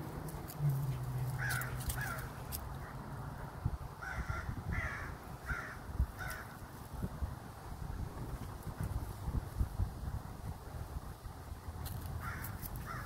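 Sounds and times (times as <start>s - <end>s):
low engine-like hum: 0.0s - 4.0s
crow cawing: 1.4s - 2.4s, 4.0s - 6.6s, 12.2s - 13.0s.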